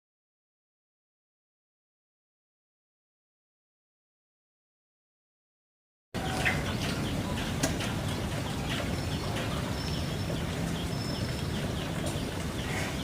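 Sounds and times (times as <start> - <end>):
small birds chirping: 6.2 - 13.0.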